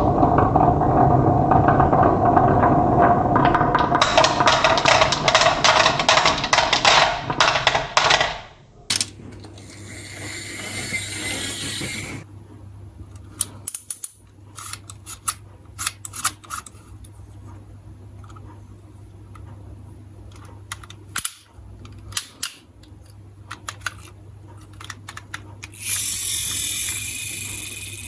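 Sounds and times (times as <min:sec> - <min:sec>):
marbles rolling on plastic track: 0:00.0 - 0:12.3, 0:24.6 - 0:28.0.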